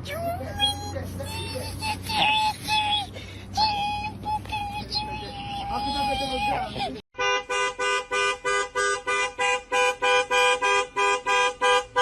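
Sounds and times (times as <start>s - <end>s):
car alarm horn beeping: 7.2s - 12.0s.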